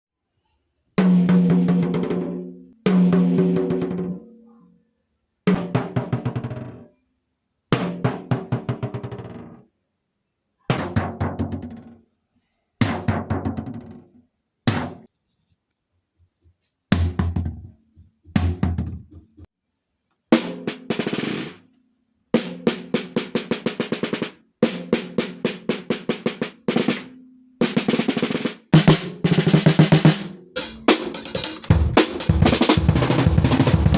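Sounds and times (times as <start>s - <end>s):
drum fills and rolls: 22.4s - 33.9s.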